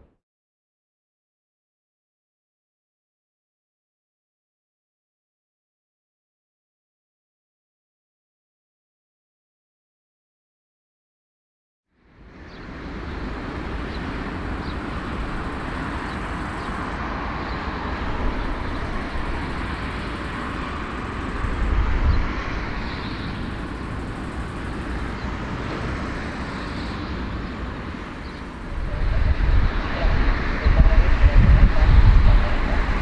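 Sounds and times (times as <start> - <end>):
aircraft engine rumble: 12.2 - 33.0.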